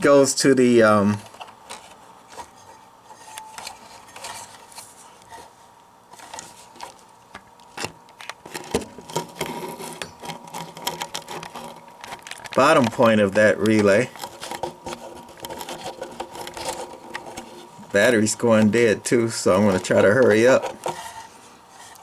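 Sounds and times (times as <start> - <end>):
handling clicks and rubbing: 6.1 - 22.0.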